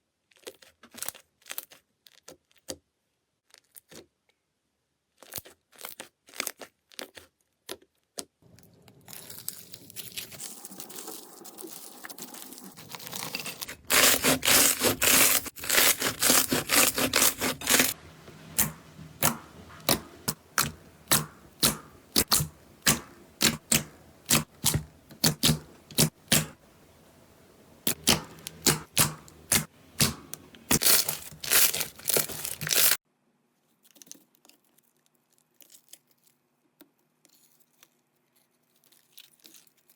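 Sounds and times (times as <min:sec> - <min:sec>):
slime popping and crackling: 0:09.0 - 0:26.6, 0:27.8 - 0:33.0.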